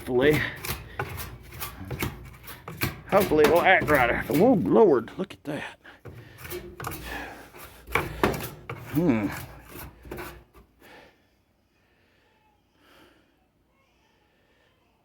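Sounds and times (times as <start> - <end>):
scraping inside dryer cabinet: 0.0 - 5.1, 6.0 - 10.8.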